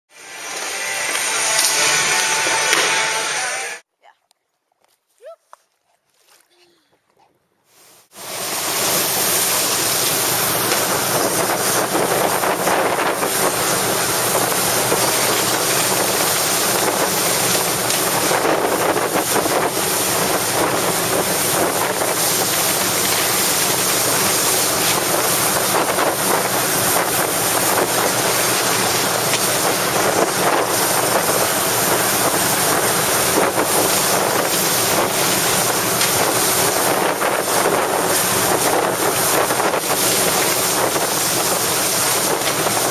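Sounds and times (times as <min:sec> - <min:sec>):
wind buffeting microphone: 0:09.6 - 0:42.9.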